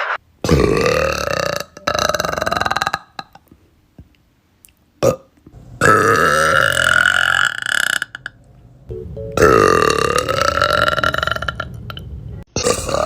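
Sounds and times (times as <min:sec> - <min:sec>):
women burping loudly: 0:00.5 - 0:03.4, 0:09.5 - 0:11.7, 0:12.6 - 0:13.0.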